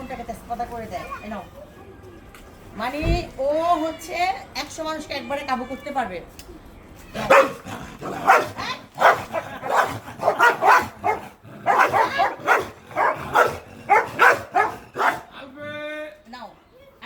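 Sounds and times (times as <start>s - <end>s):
dog barking rapidly: 7.2s - 15.3s.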